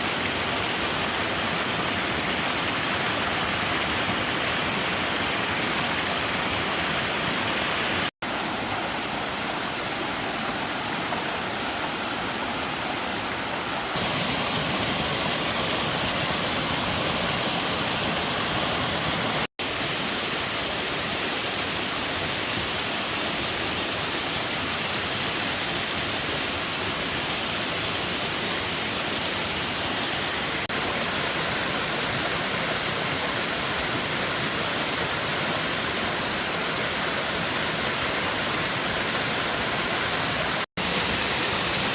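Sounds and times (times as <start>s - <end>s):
rushing water: 0.0s - 41.9s.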